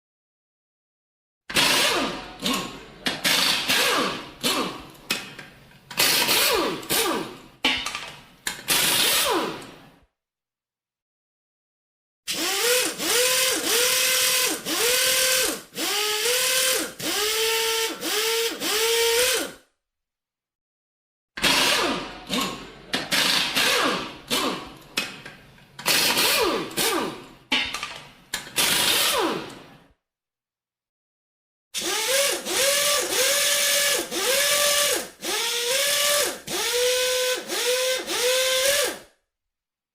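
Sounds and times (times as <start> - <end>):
pneumatic air wrench bursts: 1.5 - 5.2, 6.0 - 7.4, 8.5 - 9.7, 12.3 - 19.6, 21.4 - 25.2, 25.8 - 29.7, 31.8 - 39.1.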